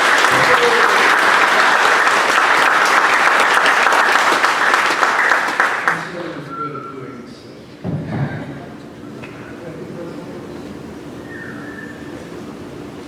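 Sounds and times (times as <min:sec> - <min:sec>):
audience applauding: 0:00.0 - 0:06.5.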